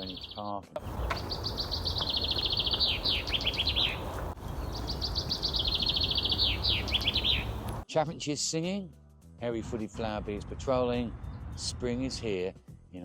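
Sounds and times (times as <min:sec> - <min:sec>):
chaffinch singing: 0:00.0 - 0:07.8.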